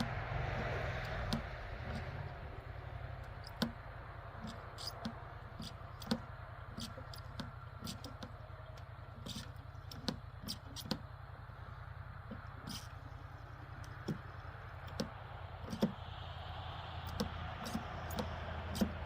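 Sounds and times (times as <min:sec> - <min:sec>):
steady low hum: 0:00.0 - 0:19.0
small clicks and taps: 0:03.2 - 0:11.1, 0:12.2 - 0:16.1, 0:17.0 - 0:19.0.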